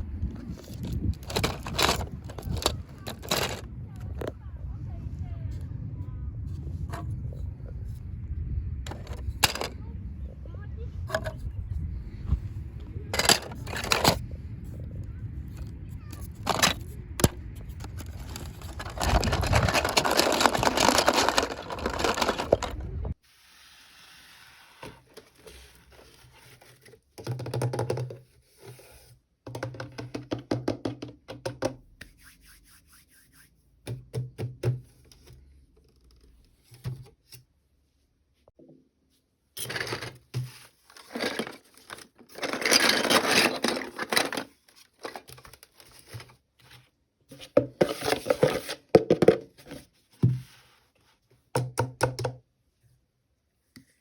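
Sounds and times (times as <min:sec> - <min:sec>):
small knocks and scrapes: 0:00.4 - 0:04.4, 0:08.9 - 0:09.8, 0:13.1 - 0:14.3, 0:16.1 - 0:23.2, 0:39.6 - 0:51.4
packaging rustling: 0:01.2 - 0:03.6, 0:17.8 - 0:23.1, 0:39.6 - 0:46.4.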